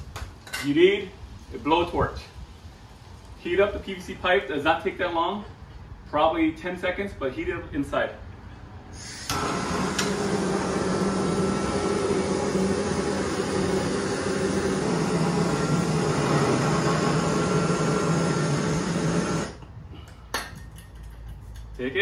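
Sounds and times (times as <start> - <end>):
blowtorch flame humming: 8.9 - 19.7.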